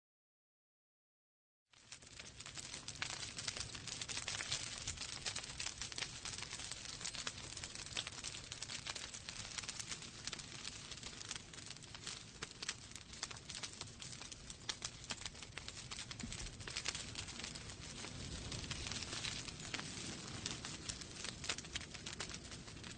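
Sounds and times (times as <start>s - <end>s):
wood fire crackling: 1.7s - 22.9s.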